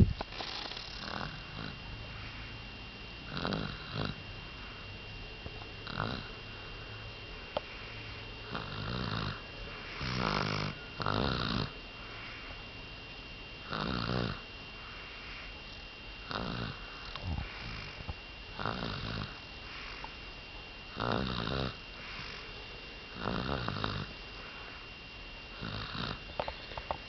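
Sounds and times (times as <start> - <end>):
rattling snore: 0.2 - 1.8, 3.3 - 4.2, 5.8 - 6.3, 8.4 - 12.4, 13.7 - 14.4, 16.3 - 20.2, 20.9 - 22.5, 23.1 - 24.1, 25.6 - 26.9.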